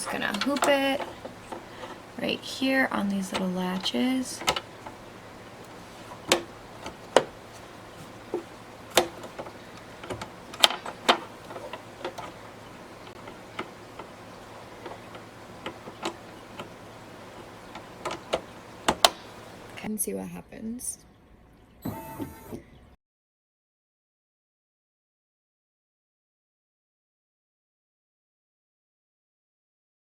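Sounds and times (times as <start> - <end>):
plastic clicks and knocks: 0.0 - 19.8.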